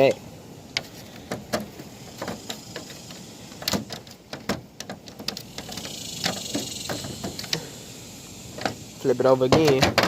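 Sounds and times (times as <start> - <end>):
steady high hiss: 0.0 - 10.0
plastic clicks and knocks: 9.5 - 10.0.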